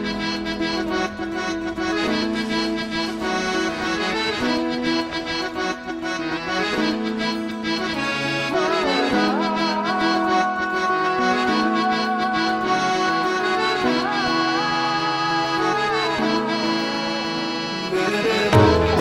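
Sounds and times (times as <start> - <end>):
reedy chords: 18.3 - 19.0.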